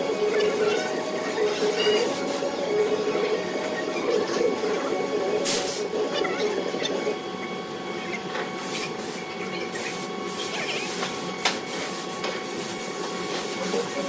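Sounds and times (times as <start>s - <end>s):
lathe motor whine: 0.0s - 11.4s.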